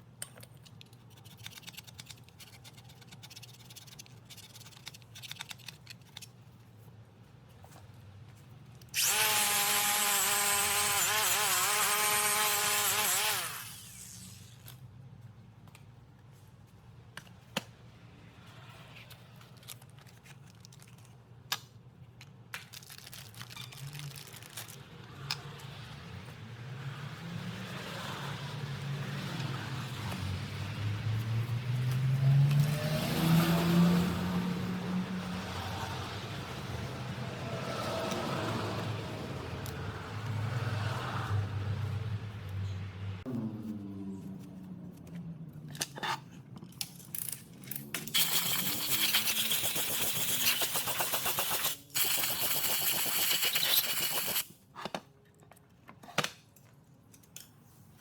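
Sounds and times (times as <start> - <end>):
tools clicking: 0.2 - 6.4
power tool whining: 9.0 - 14.6.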